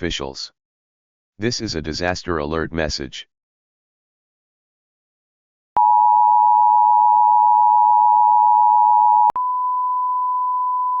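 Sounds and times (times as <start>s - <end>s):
single steady tone: 5.8s - 11.0s.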